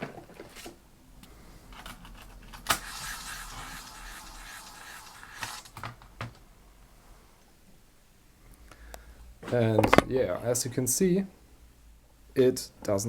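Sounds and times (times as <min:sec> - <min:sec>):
floppy drive spinning: 0:02.6 - 0:06.1.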